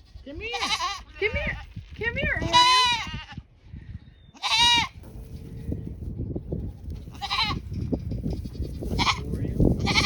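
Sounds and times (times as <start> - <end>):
goat bleating: 0.0 - 1.7, 2.3 - 3.4, 4.4 - 5.0, 7.0 - 7.7, 8.3 - 10.0
low rustling and crunching: 5.0 - 10.0.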